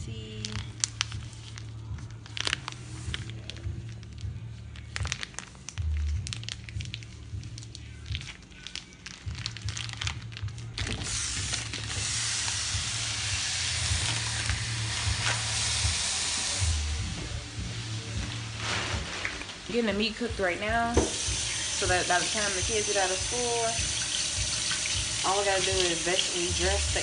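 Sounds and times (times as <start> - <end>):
ground beef sizzling in skillet: 11.1 - 18.6, 21.0 - 27.0.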